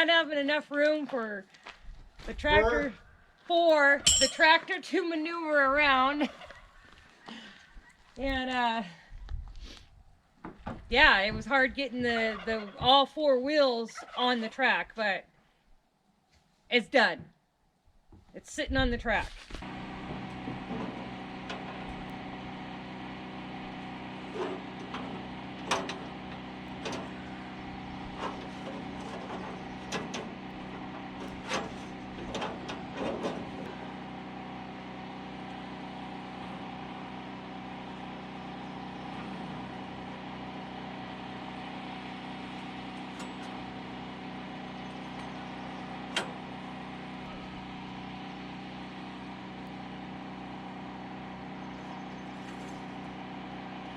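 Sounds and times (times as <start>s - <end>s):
tractor engine idling: 19.6s - 53.9s.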